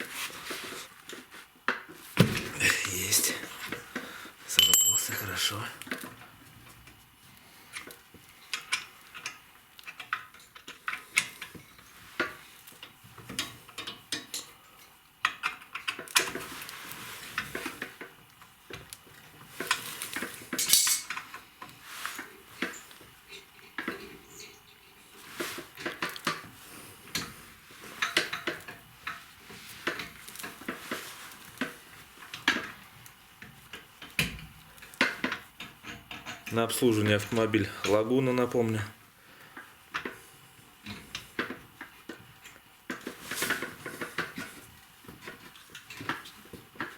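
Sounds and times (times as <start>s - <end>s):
metal tools clinking and clicking: 4.5s - 5.7s, 20.6s - 21.2s.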